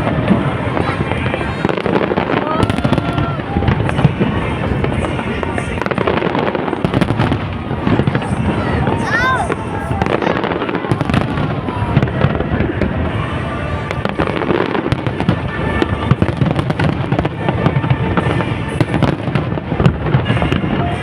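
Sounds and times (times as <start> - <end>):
heavy low rumble: 0.0 - 14.4
fireworks bangs and crackling: 0.0 - 21.0.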